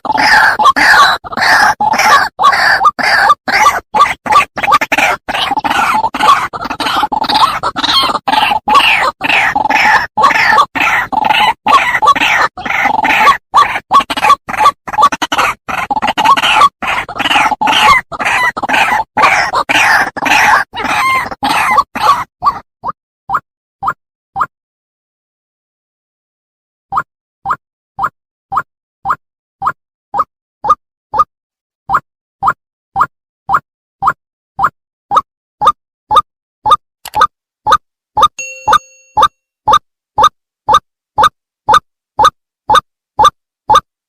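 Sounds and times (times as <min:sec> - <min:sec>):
bird harsh croaking calls: 0:00.0 - 0:22.6.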